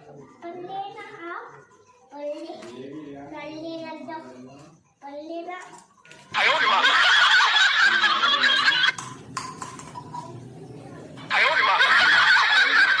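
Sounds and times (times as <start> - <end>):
laughter sound effect: 6.4 - 9.0, 11.3 - 13.0.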